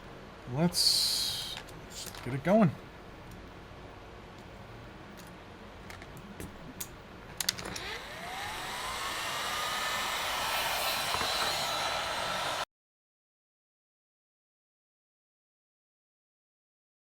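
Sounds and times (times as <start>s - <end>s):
heat gun fan whining and hissing: 0.0s - 3.4s, 6.8s - 12.7s.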